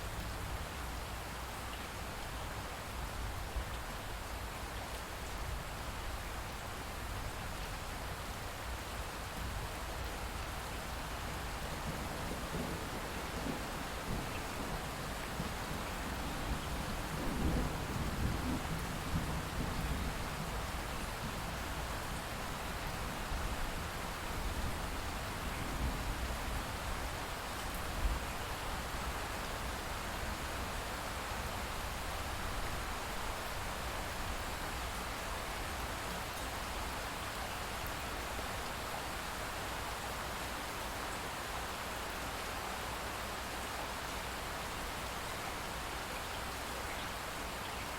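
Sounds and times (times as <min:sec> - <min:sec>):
steady rain falling: 0:00.0 - 0:47.9.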